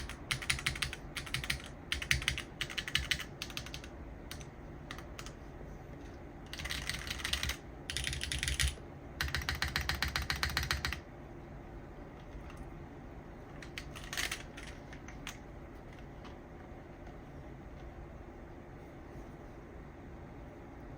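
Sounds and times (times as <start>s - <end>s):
typing on mechanical keyboard: 0.0s - 5.4s, 6.5s - 11.0s, 13.6s - 16.4s.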